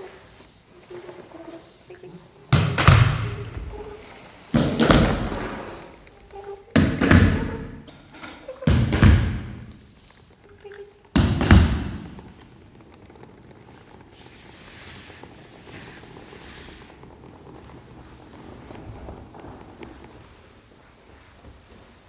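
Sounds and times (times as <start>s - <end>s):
heavy thumps: 2.5s - 10.0s, 11.2s - 12.5s.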